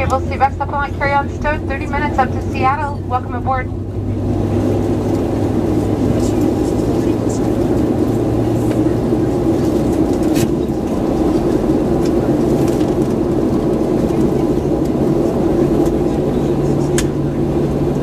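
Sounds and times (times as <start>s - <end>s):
airplane cabin drone: 0.0s - 18.0s
low hum: 0.0s - 18.0s.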